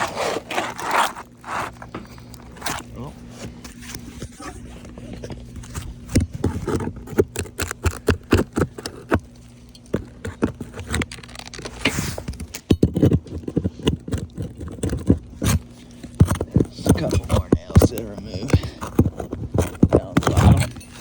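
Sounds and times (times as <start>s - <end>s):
roof shingles knocking and scraping: 9.9s - 21.0s.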